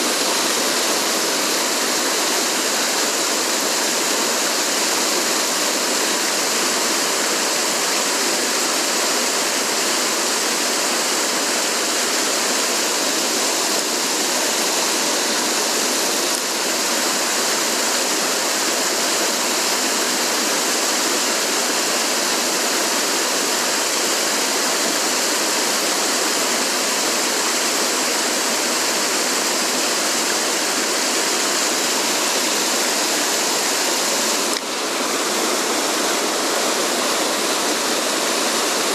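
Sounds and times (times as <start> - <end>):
stream rushing over rocks: 0.0 - 38.9.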